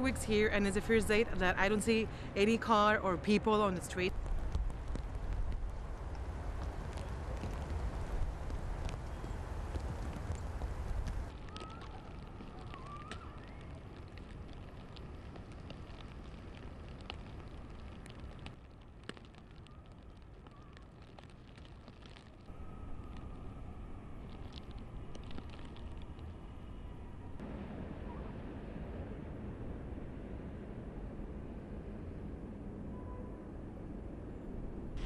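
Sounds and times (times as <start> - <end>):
faint clicks and ticks: 4.1 - 23.4, 24.2 - 26.4
low rumble and hiss: 22.0 - 35.0.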